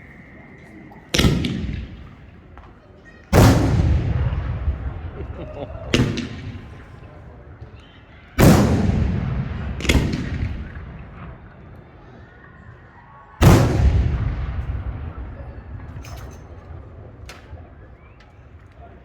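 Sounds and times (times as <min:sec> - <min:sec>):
firework booms with rolling echo: 0:01.1 - 0:02.4, 0:03.4 - 0:07.2, 0:08.4 - 0:11.8, 0:13.4 - 0:18.1.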